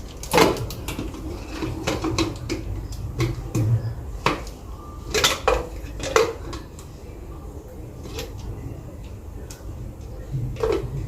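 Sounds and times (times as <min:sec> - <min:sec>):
dishes and utensils clinking: 0:05.1 - 0:06.7.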